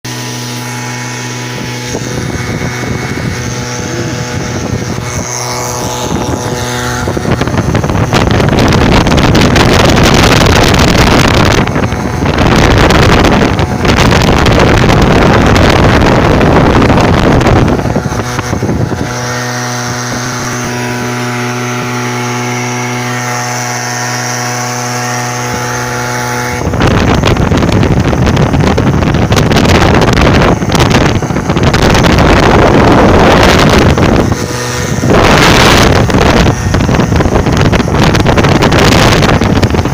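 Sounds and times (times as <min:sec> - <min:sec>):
motor humming: 0:00.0 - 0:39.9
wind rushing across microphone: 0:00.1 - 0:39.9.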